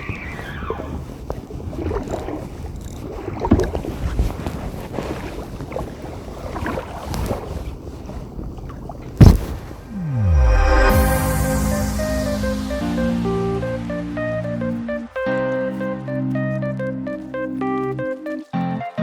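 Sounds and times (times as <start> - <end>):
falling tone: 9.9 - 15.2
music: 10.0 - 19.0.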